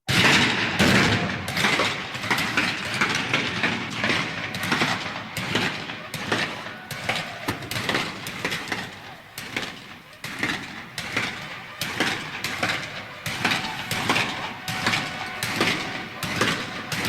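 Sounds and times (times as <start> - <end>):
musket and rifle shots: 0.1 - 6.4
background of voices: 1.0 - 17.0.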